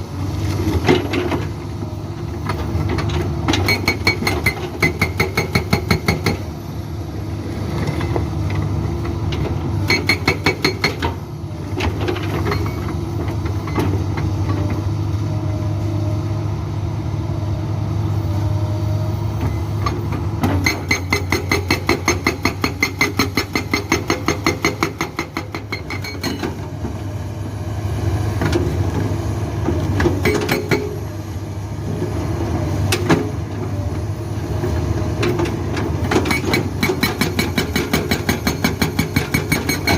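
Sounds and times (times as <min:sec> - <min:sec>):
hydraulic breaker hammering rock: 0:03.6 - 0:06.4, 0:09.9 - 0:11.2, 0:20.4 - 0:26.6, 0:30.1 - 0:31.0, 0:36.1 - 0:39.9.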